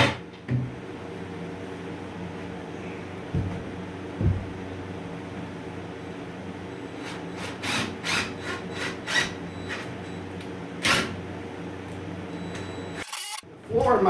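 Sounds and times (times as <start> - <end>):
steady low hum: 0.6 - 7.4.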